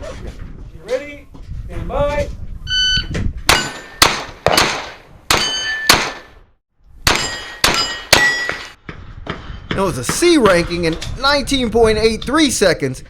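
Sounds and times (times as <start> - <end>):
rimfire rifle shots: 3.5 - 6.3.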